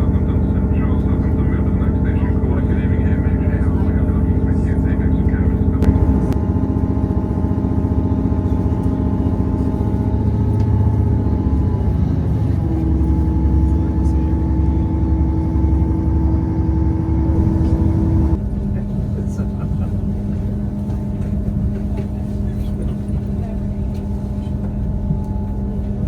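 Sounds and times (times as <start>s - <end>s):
train engine droning: 0.0s - 26.0s.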